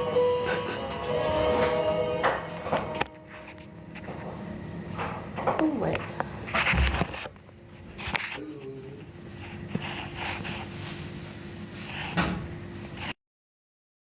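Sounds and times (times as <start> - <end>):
faint steady hum: 0.0 - 13.2.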